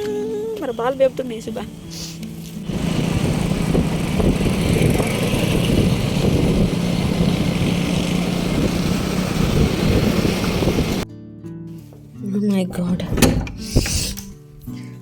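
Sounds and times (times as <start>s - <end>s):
rushing air: 1.9s - 11.0s
small motor humming: 2.6s - 11.0s.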